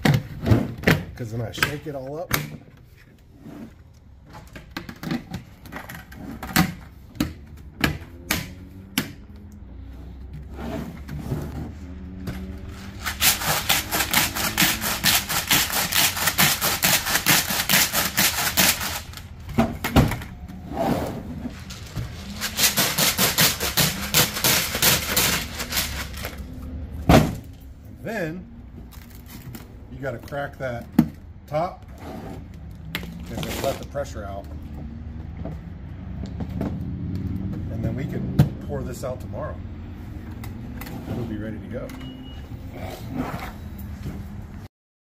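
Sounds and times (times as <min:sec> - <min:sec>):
corn rattling and sloshing in container: 0:12.8 - 0:19.4, 0:21.5 - 0:26.5, 0:33.2 - 0:34.0.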